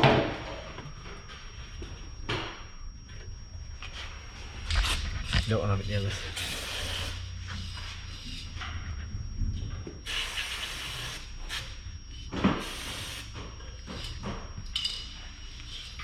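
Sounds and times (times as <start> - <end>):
aerosol spray can hissing: 6.4 - 7.2.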